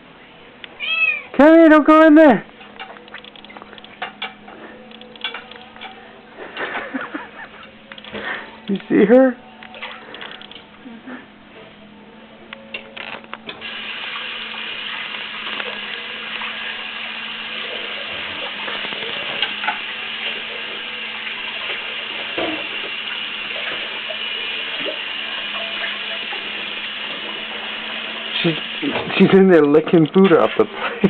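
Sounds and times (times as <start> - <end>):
water running from tap: 13.5 - 30.8.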